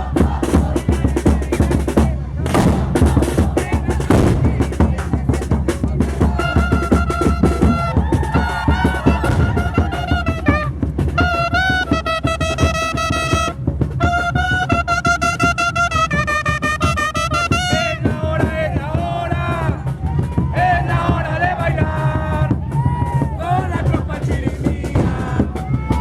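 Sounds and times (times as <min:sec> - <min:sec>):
drums beating: 0:00.0 - 0:26.0
high wind instrument melody: 0:03.8 - 0:18.1.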